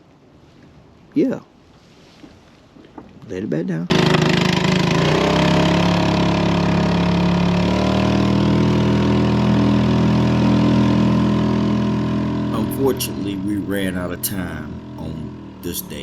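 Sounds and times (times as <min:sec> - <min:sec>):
engine running: 0:03.9 - 0:13.5.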